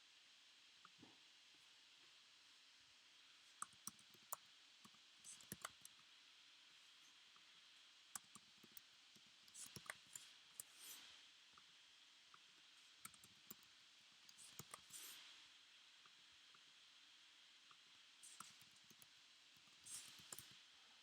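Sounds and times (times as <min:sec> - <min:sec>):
computer mouse clicks: 0:03.6 - 0:06.0, 0:08.1 - 0:11.0, 0:13.0 - 0:13.7, 0:14.3 - 0:15.2, 0:18.2 - 0:20.6
keyboard clicks: 0:05.4 - 0:05.9, 0:09.5 - 0:10.2, 0:14.3 - 0:14.9.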